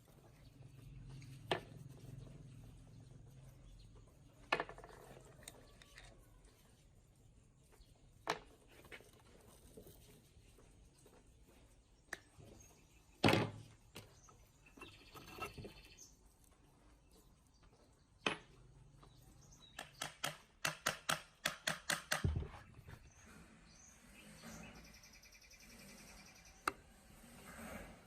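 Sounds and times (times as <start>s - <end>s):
rasping scrapes: 25.8s - 28.0s.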